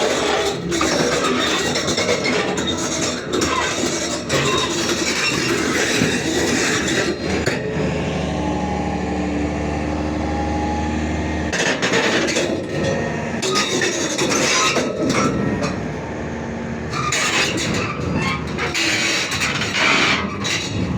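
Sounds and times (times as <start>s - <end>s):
metal track clatter and rattling: 0.0s - 7.7s, 11.5s - 16.0s, 16.9s - 20.9s
diesel engine running: 0.0s - 20.9s.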